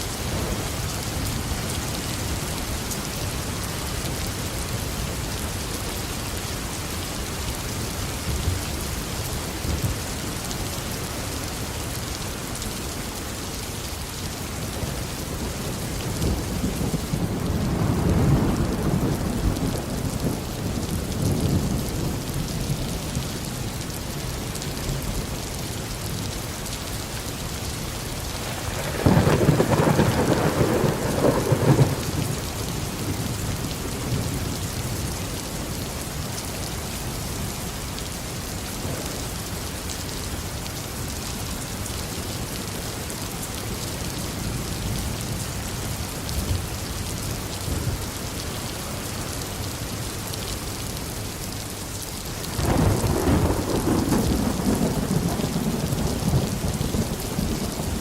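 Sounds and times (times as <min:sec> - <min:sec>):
rain falling: 0:00.0 - 0:58.0
thunder rumbling: 0:00.2 - 0:02.7, 0:14.8 - 0:23.3, 0:28.4 - 0:35.3, 0:52.4 - 0:58.0.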